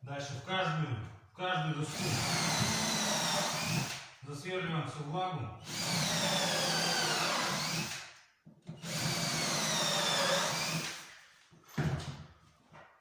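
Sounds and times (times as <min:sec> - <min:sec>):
electric drill boring into wood: 0:01.9 - 0:04.0, 0:05.6 - 0:08.0, 0:08.8 - 0:11.1.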